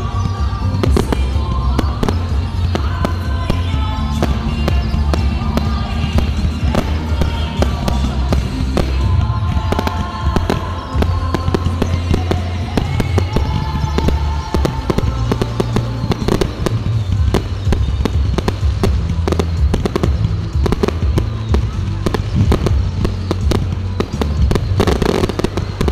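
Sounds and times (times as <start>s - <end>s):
fireworks bangs and crackles: 0.0s - 25.9s
loud music with heavy bass: 0.0s - 25.9s.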